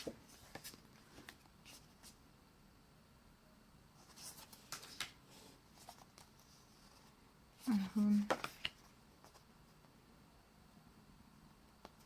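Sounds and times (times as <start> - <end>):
postcards rustling and clicking: 4.0 - 9.5.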